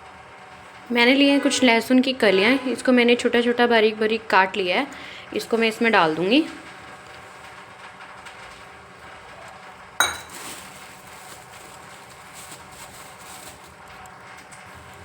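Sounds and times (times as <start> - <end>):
utensil clinking against pan: 10.0 - 10.8.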